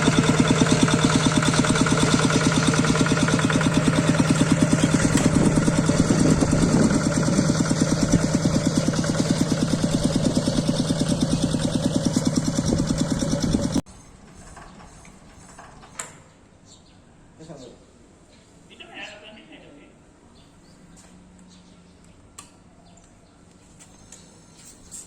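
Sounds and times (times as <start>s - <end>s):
small diesel engine running: 0.0s - 13.8s.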